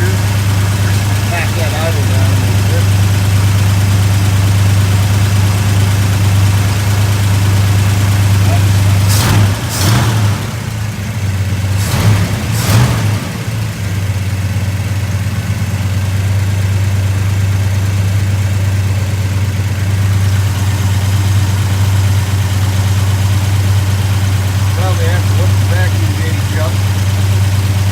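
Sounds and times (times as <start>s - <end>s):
car engine idling: 0.0s - 27.9s.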